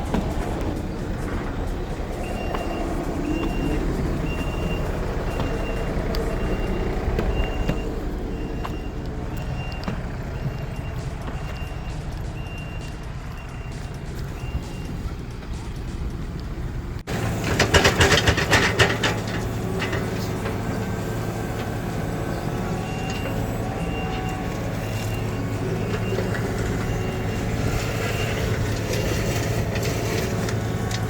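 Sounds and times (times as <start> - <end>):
diesel machine engine running: 0.0 - 31.0
reversing alarm beeping: 1.2 - 16.0, 20.6 - 31.0
loud clattering and rattling: 17.1 - 21.9.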